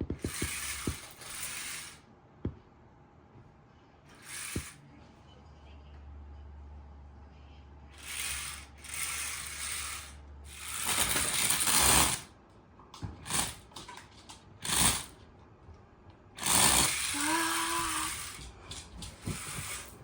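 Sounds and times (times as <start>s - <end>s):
toy robot motor whirring: 0.1s - 2.0s, 4.1s - 4.8s, 7.9s - 12.3s, 13.2s - 13.6s, 14.6s - 15.2s, 16.4s - 20.0s
low steady hum: 2.0s - 10.8s.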